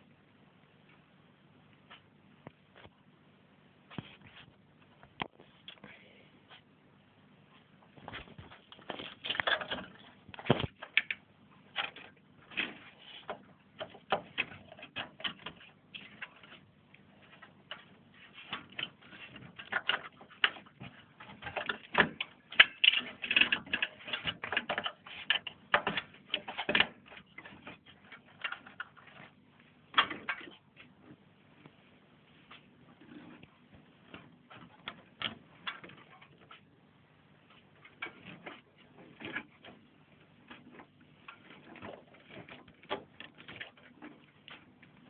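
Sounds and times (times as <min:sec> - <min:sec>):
computer parts clicking and tapping: 0:17.3 - 0:29.3.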